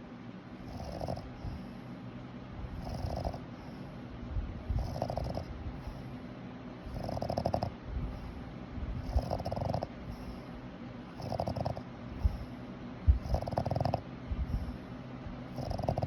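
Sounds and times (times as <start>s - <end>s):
dog snoring: 0.6s - 1.9s, 2.6s - 3.9s, 4.7s - 6.2s, 6.8s - 16.0s.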